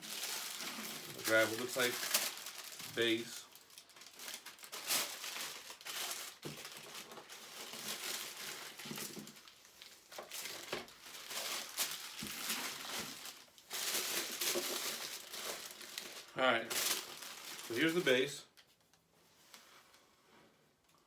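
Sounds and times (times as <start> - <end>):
packing material rustling: 0.0 - 18.7.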